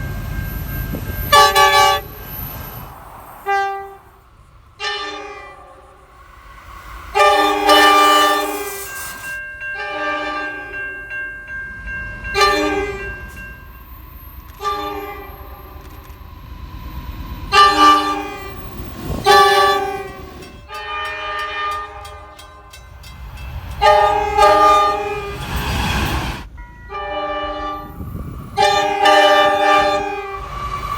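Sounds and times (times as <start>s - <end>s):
low rumble of passing train: 0.0s - 30.9s
locomotive air horn chord: 1.3s - 2.1s, 3.4s - 4.2s, 4.8s - 6.2s, 7.1s - 10.8s, 12.4s - 13.2s, 14.6s - 15.6s, 17.5s - 22.7s, 23.8s - 25.4s, 26.9s - 28.0s, 28.6s - 30.6s.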